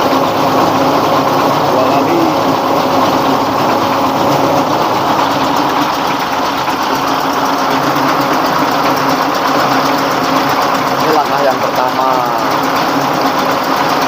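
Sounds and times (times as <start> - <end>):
diesel engine hum: 0.0 - 13.8
rice mill machine noise: 0.0 - 14.0.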